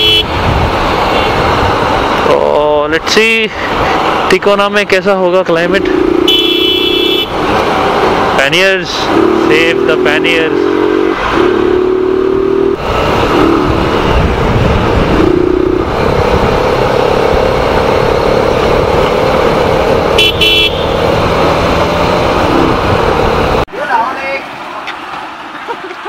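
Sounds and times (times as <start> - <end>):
vehicle horns honking: 0.0 - 0.5, 1.1 - 1.4, 6.2 - 7.4, 9.1 - 12.7, 20.1 - 21.2
motorcycle running at speed: 0.0 - 4.4, 5.5 - 23.6
wind and road noise: 0.0 - 26.0.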